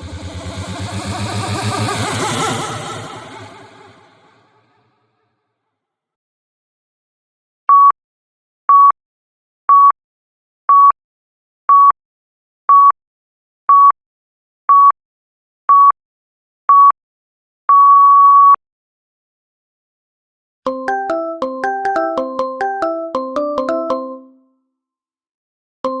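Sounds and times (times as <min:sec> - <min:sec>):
electronic countdown beeps: 0:07.7 - 0:07.9, 0:09.7 - 0:10.0, 0:16.7 - 0:17.0, 0:17.7 - 0:18.6, 0:20.7 - 0:24.4.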